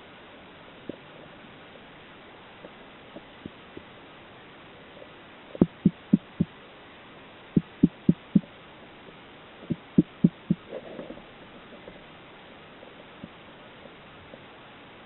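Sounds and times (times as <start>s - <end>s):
dull low knocks: 5.6s - 6.5s, 7.6s - 8.5s, 9.7s - 10.7s.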